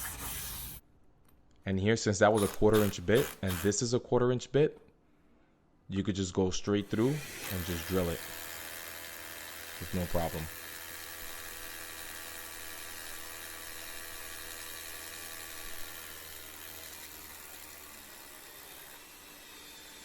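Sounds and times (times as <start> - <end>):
power drill whine: 2.4 - 3.8, 6.8 - 13.5, 14.4 - 20.0.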